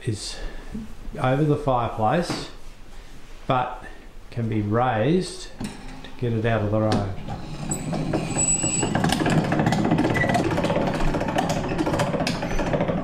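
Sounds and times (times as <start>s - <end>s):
high squeaks: 7.2s - 13.0s.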